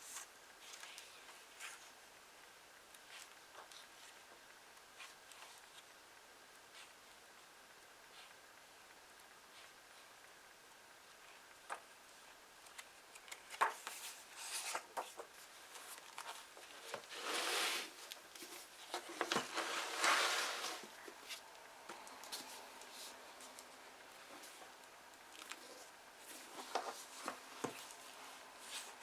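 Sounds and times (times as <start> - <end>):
paper pages turning: 12.6 - 21.4.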